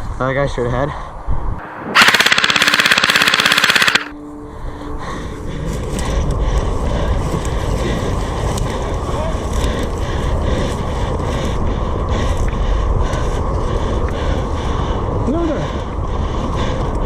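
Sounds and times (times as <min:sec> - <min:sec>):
airsoft gun full-auto burst: 0:01.6 - 0:04.1.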